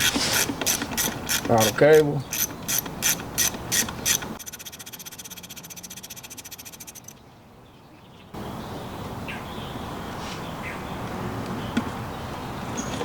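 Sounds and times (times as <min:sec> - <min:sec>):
socket ratchet clicking: 0:00.0 - 0:07.1.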